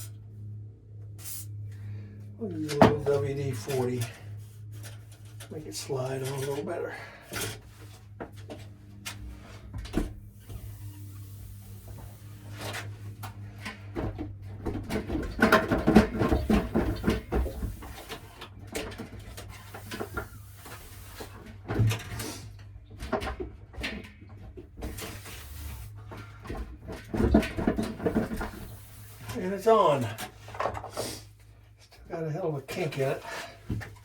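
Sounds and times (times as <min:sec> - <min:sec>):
low steady hum: 0:00.0 - 0:34.0.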